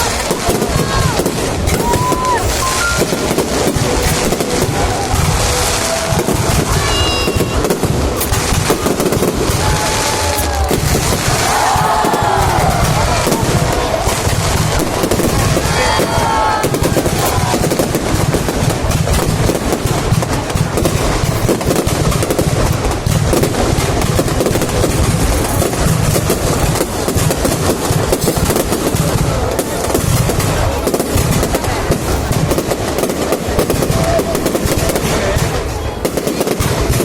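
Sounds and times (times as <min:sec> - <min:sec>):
fireworks bangs crackling: 0:00.0 - 0:37.0.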